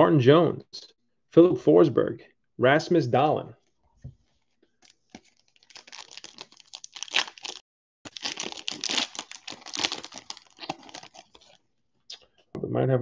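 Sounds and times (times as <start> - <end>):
wrapper tearing and crinkling: 4.8 - 11.6.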